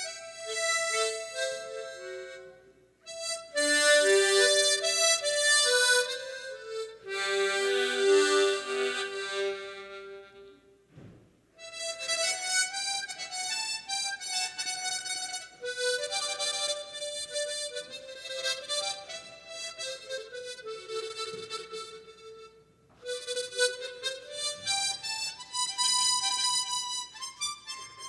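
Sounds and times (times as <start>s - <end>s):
harmonica melody: 0.0s - 10.8s, 11.5s - 28.0s
soft knock: 10.9s - 11.3s.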